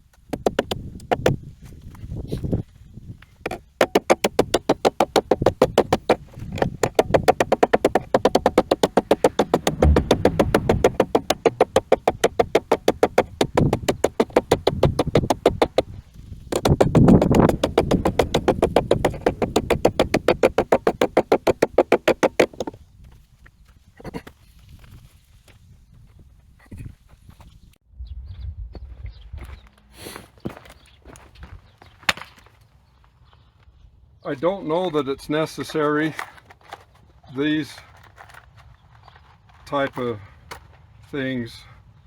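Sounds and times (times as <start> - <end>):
electronic music with fast beat: 6.9 - 15.8.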